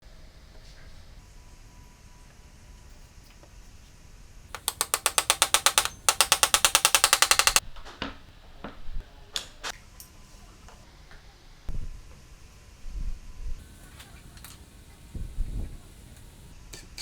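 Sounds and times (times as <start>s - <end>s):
rapid ratchet-like clicking: 4.6s - 7.6s
separate knocks: 4.6s - 7.6s.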